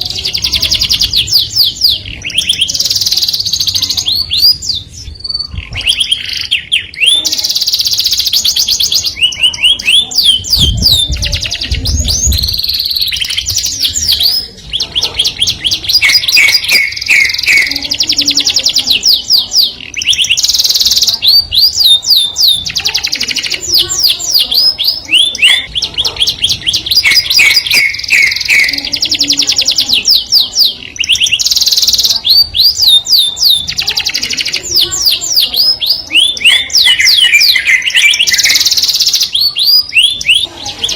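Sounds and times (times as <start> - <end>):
canary singing trills: 0.0 - 40.9.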